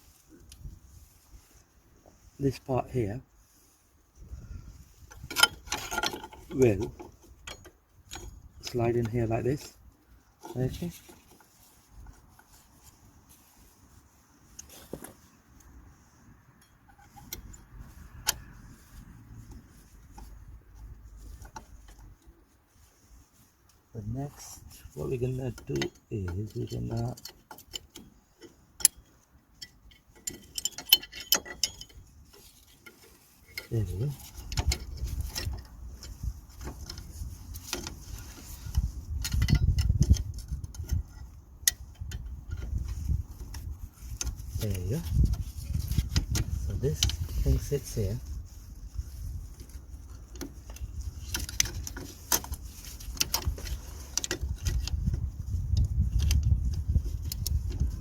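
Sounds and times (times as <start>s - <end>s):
small metal parts clinking: 5.1s - 9.7s, 25.6s - 41.1s
metallic clicks and knocks: 5.1s - 9.8s, 16.6s - 18.5s, 25.5s - 48.0s, 49.6s - 58.0s.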